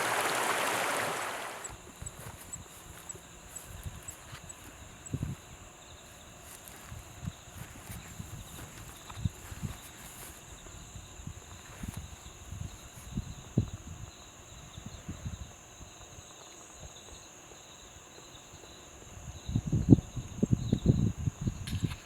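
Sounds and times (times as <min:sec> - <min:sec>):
stream running: 0:00.0 - 0:02.3
insects droning: 0:00.0 - 0:22.0.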